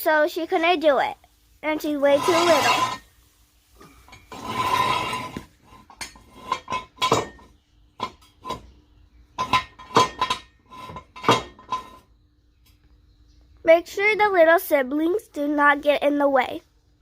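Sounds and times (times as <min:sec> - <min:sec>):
metal scraping: 0:01.7 - 0:03.2, 0:03.8 - 0:12.2
ringing metal clanks: 0:04.0 - 0:08.6, 0:09.4 - 0:12.0.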